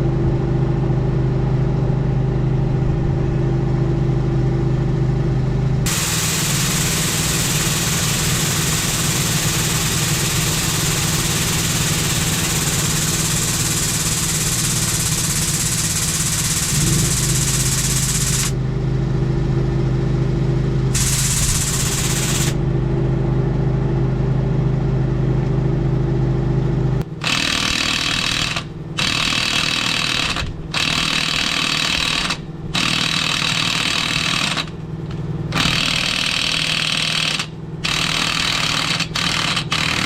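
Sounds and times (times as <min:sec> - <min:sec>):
motor humming: 0:05.8 - 0:18.6, 0:20.9 - 0:22.7
loud hiss: 0:05.9 - 0:18.5, 0:21.0 - 0:22.6.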